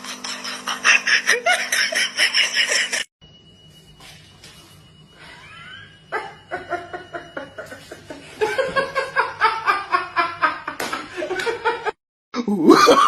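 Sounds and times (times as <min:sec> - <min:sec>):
rhythmic laughing: 0:00.0 - 0:03.1, 0:05.2 - 0:12.0.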